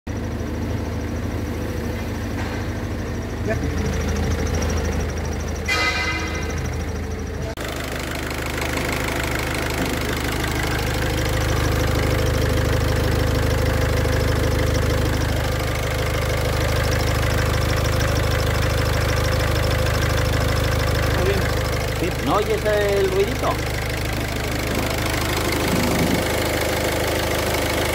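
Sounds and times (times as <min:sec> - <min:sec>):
car engine idling: 0:00.1 - 0:27.9
brief high-pitched tone: 0:05.7 - 0:06.6.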